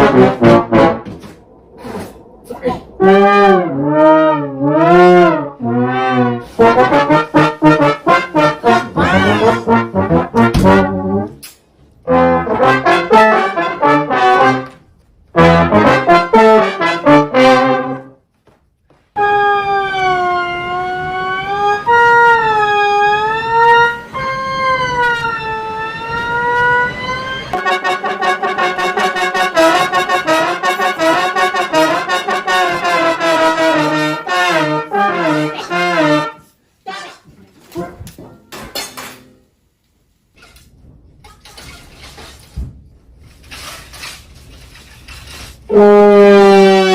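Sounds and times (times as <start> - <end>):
brass instrument imitating speech: 6.1 - 10.8, 27.6 - 37.9.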